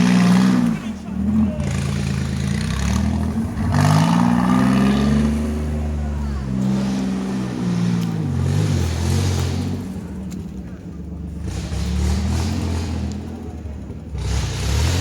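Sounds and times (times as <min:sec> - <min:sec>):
vehicle engine revving: 0:00.0 - 0:15.0.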